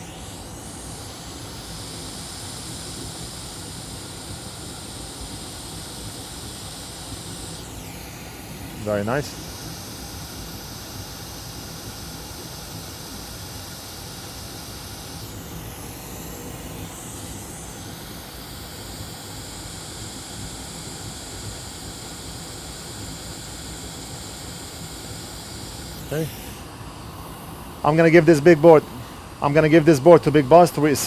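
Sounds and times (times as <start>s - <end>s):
steady background hiss: 8.5s - 9.7s, 25.2s - 31.0s.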